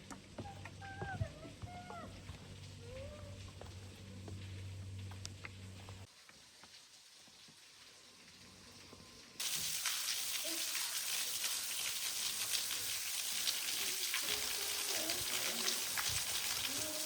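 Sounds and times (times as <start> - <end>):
rushing water hiss: 6.0 - 17.0.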